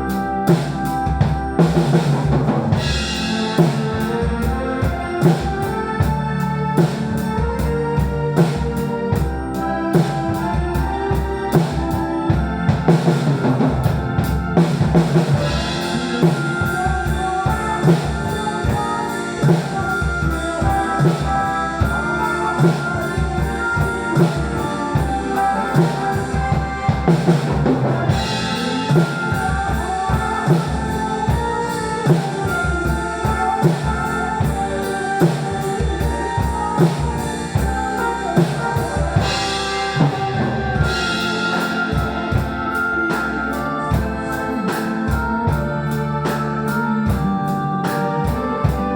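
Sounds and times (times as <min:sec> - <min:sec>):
drum kit playing a steady beat: 0:00.0 - 0:48.9
recorded song melody: 0:00.0 - 0:48.9.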